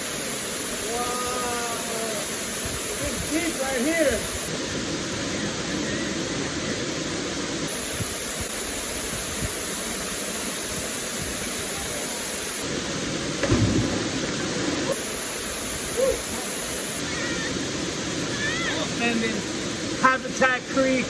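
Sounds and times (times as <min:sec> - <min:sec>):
waterfall rushing: 0:00.0 - 0:21.0
water splash surge: 0:13.4 - 0:15.0.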